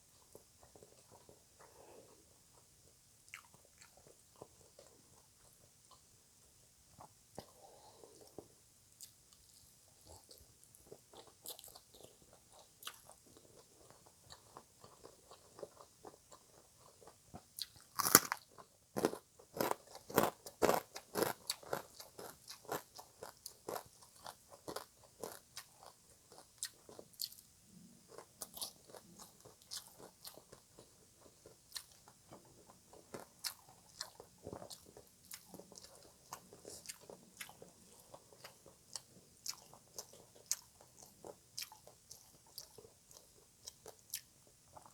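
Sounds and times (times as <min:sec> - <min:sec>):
crunching and chewing salad: 0:03.3 - 0:06.0, 0:06.9 - 0:44.9
loud crisp bite: 0:18.0 - 0:18.4.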